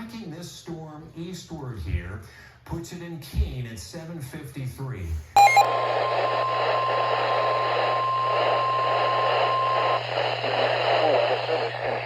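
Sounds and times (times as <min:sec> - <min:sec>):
low hum: 0:05.4 - 0:12.0
radio static: 0:05.4 - 0:12.0
steady alarm tone: 0:05.4 - 0:12.0.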